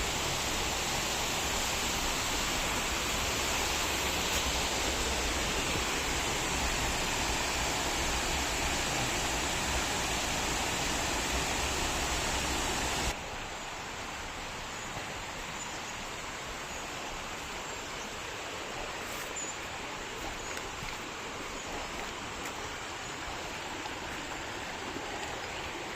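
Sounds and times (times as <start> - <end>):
waterfall rushing: 0.0 - 13.4.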